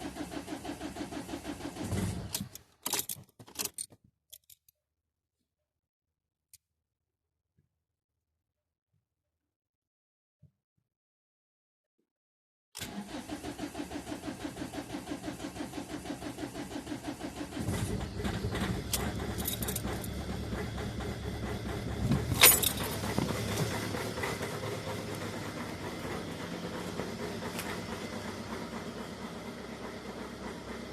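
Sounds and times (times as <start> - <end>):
diesel engine running: 0.0 - 2.4, 12.8 - 30.9
diesel engine cranking: 0.0 - 3.8, 12.8 - 30.9.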